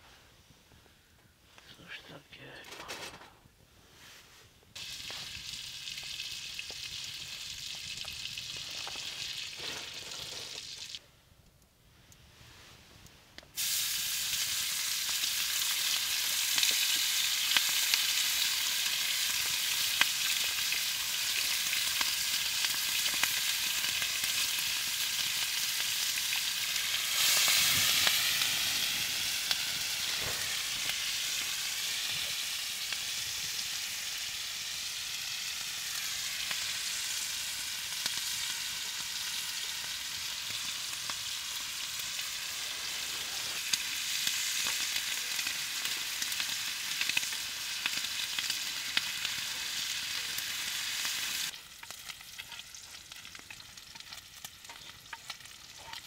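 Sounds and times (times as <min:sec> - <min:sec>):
food sizzling in a pan: 0:04.8 - 0:11.0, 0:13.6 - 0:56.0
pops and crackles: 0:04.8 - 0:11.0.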